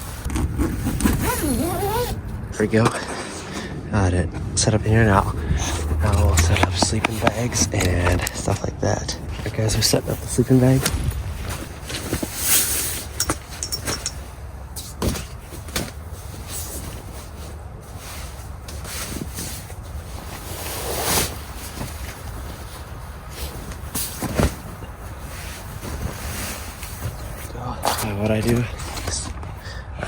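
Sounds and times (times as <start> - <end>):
sleeping bag fabric rustling: 0.0 - 2.4, 9.2 - 28.2.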